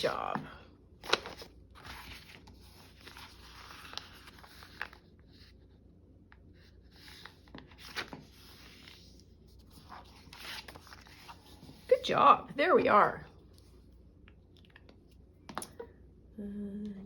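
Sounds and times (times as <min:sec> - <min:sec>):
faint paper rustling: 0:01.0 - 0:12.1.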